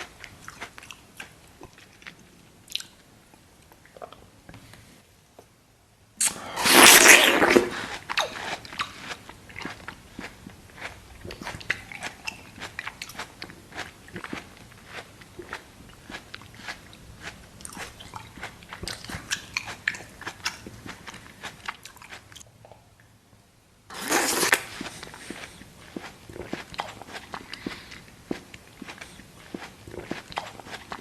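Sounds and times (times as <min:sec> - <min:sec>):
crunchy chewing: 0:06.7 - 0:22.4, 0:23.9 - 0:31.0.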